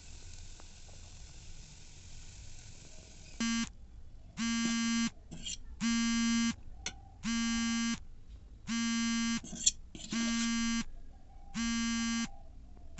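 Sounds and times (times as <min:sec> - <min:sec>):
electronic buzzer blip: 0:03.4 - 0:03.7, 0:04.4 - 0:06.6, 0:07.2 - 0:08.0, 0:08.7 - 0:10.9, 0:11.6 - 0:12.3
low raspy buzzes: 0:03.4 - 0:03.7, 0:04.4 - 0:06.6, 0:08.7 - 0:10.9, 0:11.6 - 0:12.3.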